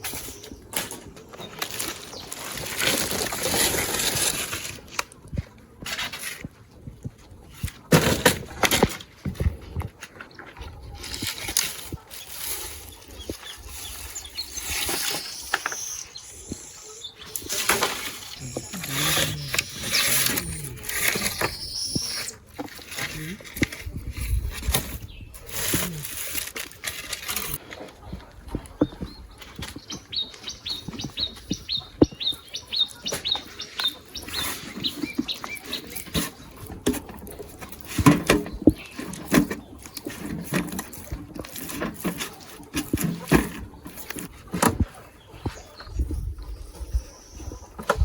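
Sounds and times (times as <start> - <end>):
bird chirping: 12.2 - 22.4, 28.8 - 36.1, 45.2 - 48.0.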